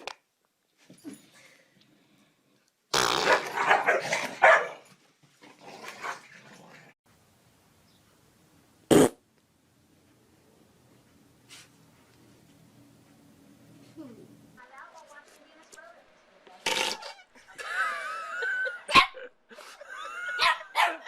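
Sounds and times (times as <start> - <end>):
dog growling and barking: 3.2 - 4.9, 5.5 - 6.9.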